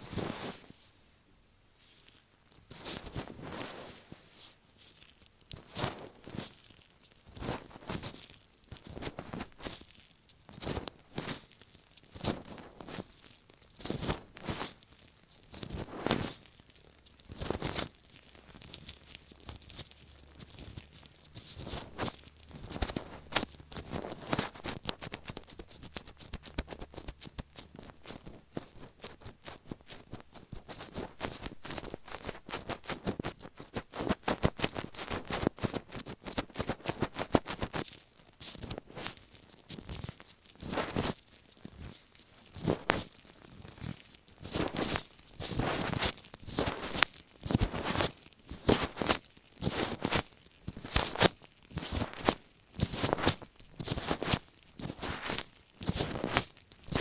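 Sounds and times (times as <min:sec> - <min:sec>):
sticky rubbing rustles: 0:17.4 - 0:37.8, 0:42.4 - 0:57.0.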